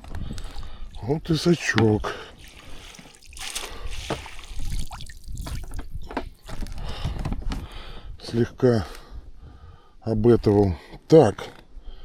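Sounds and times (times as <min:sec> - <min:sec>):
water splashing and dripping: 0:00.4 - 0:06.8.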